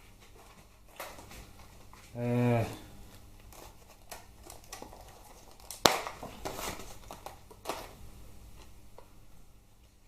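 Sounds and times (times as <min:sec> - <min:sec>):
packaging rustling: 0:03.0 - 0:09.1.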